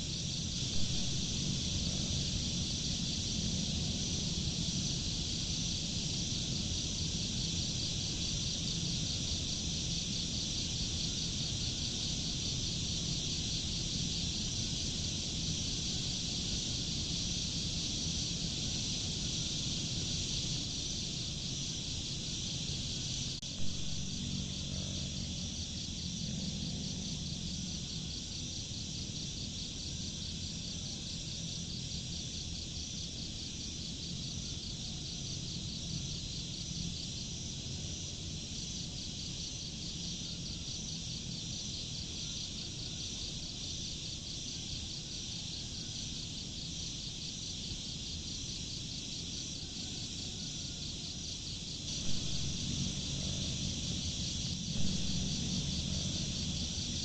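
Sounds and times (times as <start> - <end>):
low background rumble: 0.0 - 29.0, 51.9 - 57.0
crickets chirring: 0.0 - 57.0.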